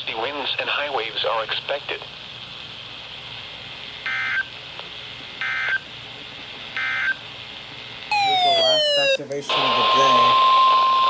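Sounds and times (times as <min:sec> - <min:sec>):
tone sliding down in pitch: 0:08.1 - 0:09.2
data tone bursts: 0:08.1 - 0:10.6.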